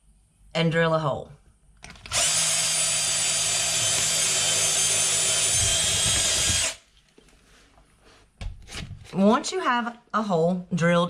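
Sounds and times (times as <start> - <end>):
power drill drilling into wood: 2.1 - 6.8.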